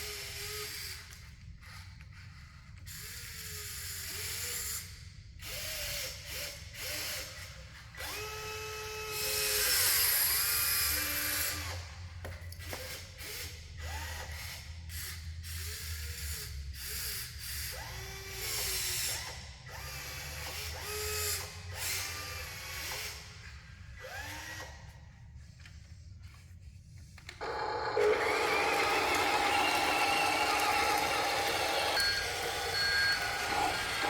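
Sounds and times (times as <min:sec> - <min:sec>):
small electric motors whining: 0:27.4 - 0:34.0.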